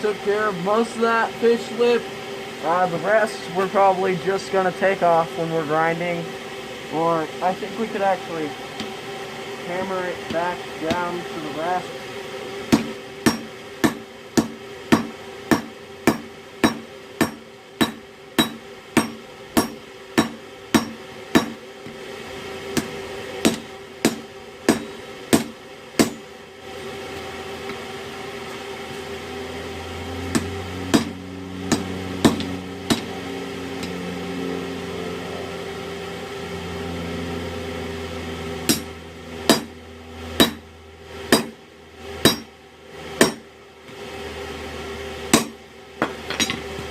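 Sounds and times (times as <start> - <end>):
steady hum: 0.0 - 46.9
hammer striking metal on anvil: 12.7 - 21.6, 22.8 - 26.3, 30.3 - 33.1, 38.7 - 39.7, 40.4 - 40.6, 41.3 - 41.6, 42.2 - 42.5, 43.2 - 43.5, 45.3 - 46.6.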